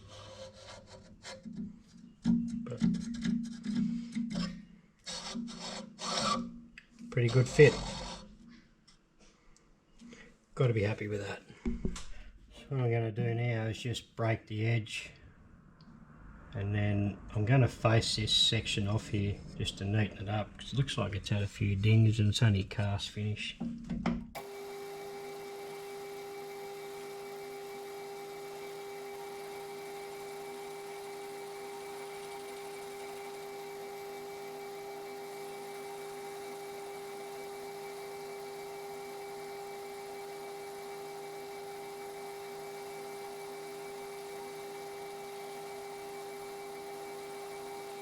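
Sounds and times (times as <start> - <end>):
metal lathe whining: 5.1 - 6.5, 7.2 - 8.3, 24.4 - 48.0.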